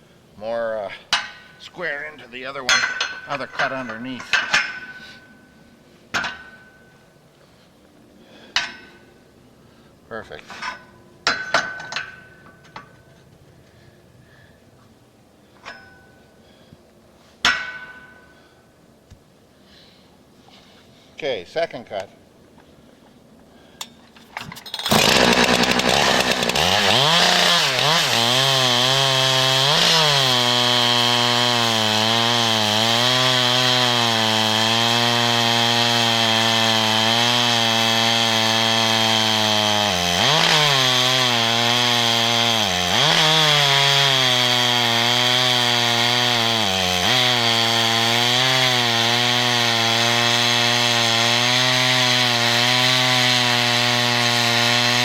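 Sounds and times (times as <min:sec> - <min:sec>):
chainsaw ripping through log: 0:24.5 - 0:55.0.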